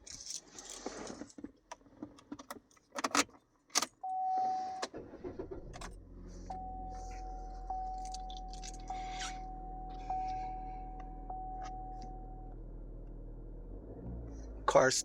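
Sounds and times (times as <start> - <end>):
car engine starting and idling: 3.8 - 15.0
steady high tone: 6.5 - 12.5
car key jangling: 6.9 - 12.4.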